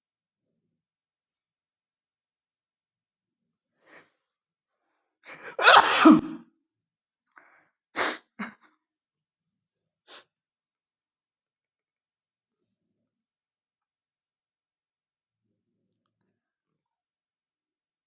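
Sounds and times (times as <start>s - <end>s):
woman sneezing loudly: 5.4s - 6.5s.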